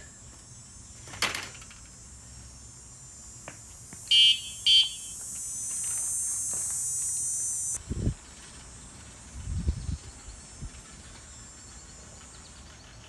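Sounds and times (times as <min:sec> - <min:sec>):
high hiss: 0:00.0 - 0:08.1
short electronic beeps: 0:04.1 - 0:07.8.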